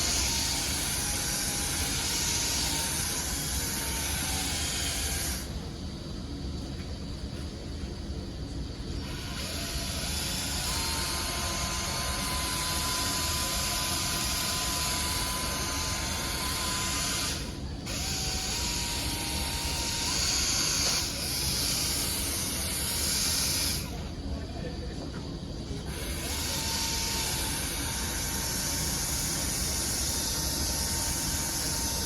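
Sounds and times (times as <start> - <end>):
buffer pad hissing on lens: 0.0 - 5.5
buffer motor whine: 0.0 - 25.0, 25.6 - 32.0.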